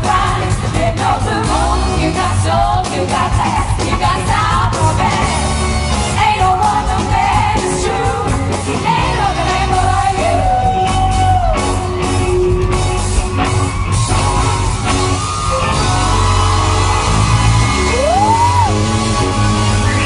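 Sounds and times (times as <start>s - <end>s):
pop-soul song by live band: 0.0s - 20.0s.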